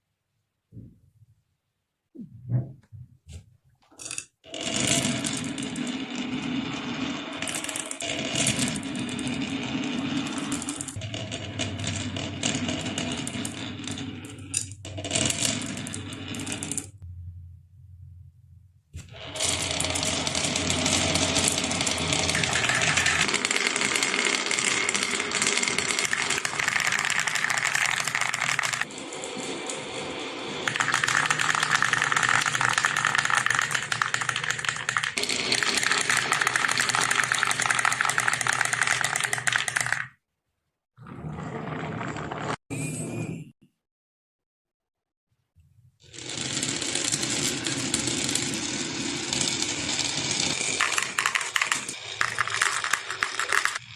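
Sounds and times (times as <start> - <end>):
marbles rattling down marble run: 4.0 - 16.9, 19.2 - 40.2, 46.1 - 53.9
low hum: 17.0 - 19.0.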